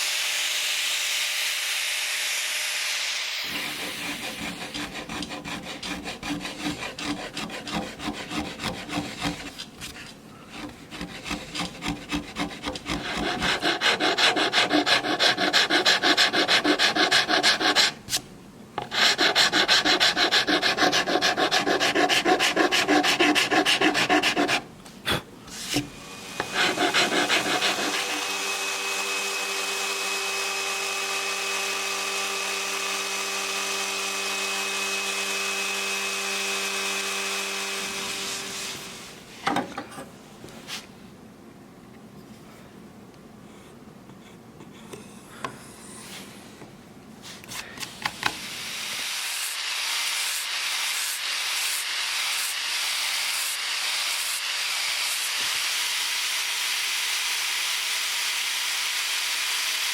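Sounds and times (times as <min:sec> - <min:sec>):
rasp scraping wood: 0:03.4 - 0:18.2, 0:18.8 - 0:24.7, 0:25.5 - 0:28.4.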